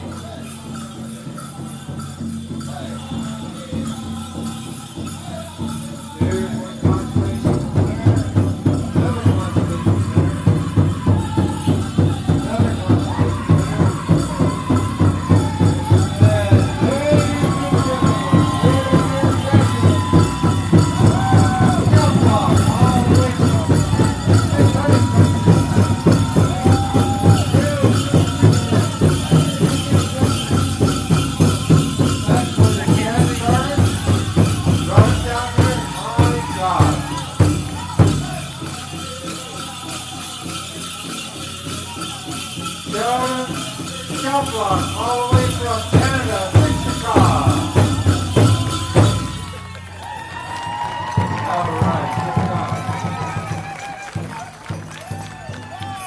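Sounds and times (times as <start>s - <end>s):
drum group singing: 0.0s - 49.6s
jingling bells: 0.0s - 56.0s
steady drumbeat: 0.0s - 56.0s
group of voices singing: 44.8s - 49.0s.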